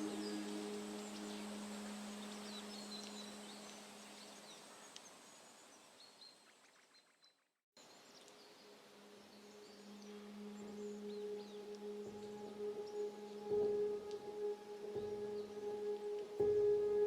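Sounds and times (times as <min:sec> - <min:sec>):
low musical drone: 0:00.0 - 0:04.4, 0:08.8 - 0:17.0
faint birds chirping: 0:00.0 - 0:17.0.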